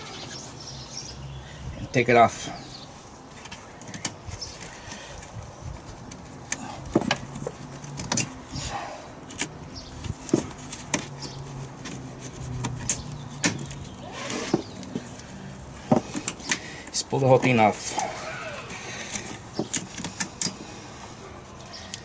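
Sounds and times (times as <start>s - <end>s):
plastic parts clicking and knocking: 19.1s - 20.7s.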